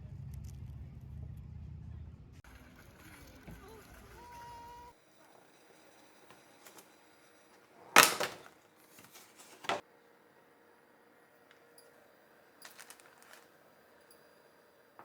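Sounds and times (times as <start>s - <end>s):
loud kitchen clack: 7.8s - 8.5s.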